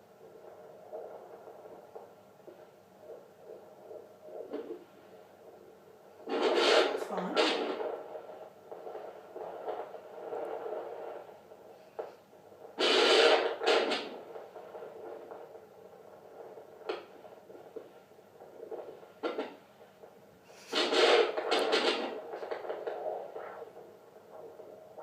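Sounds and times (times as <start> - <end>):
doppler speaker static hiss: 0.0 - 25.0
short crackles and clicks: 0.2 - 25.0
loud crackling rush: 20.5 - 25.0.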